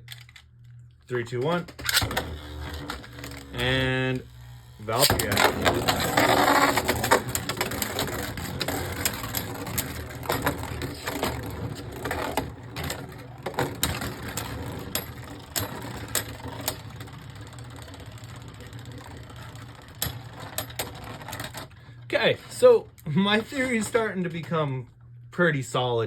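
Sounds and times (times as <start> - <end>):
spinning tops whirring: 1.2 - 21.8
spinning tops clashing clicks: 1.5 - 21.7.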